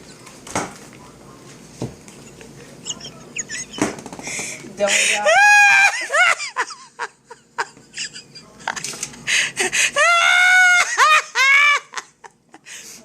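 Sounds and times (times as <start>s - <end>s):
woman's high wordless cries: 4.9s - 6.3s, 9.9s - 11.8s.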